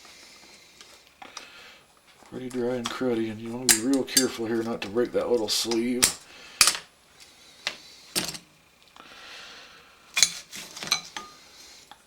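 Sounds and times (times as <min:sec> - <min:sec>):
tools clicking on metal parts: 0:02.4 - 0:06.9, 0:08.2 - 0:08.4, 0:10.2 - 0:11.3.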